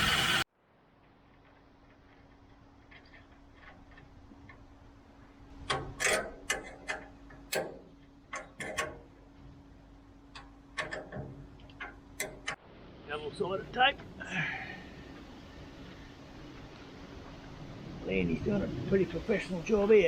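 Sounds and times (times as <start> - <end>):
steady low hum: 0.0 - 20.0
hand tools and metal parts clicking: 5.6 - 9.2, 10.3 - 12.6.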